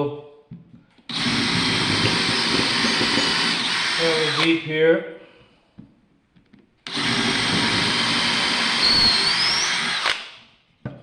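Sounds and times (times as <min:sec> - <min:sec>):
power drill boring into wood: 0:01.1 - 0:04.6, 0:06.8 - 0:10.4.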